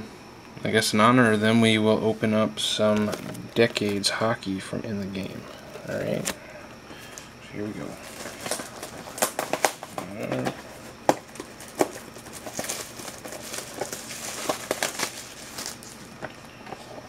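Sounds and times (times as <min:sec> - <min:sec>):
plastic wrapping crinkling: 0:07.9 - 0:17.0
cardboard box being handled: 0:08.0 - 0:17.0.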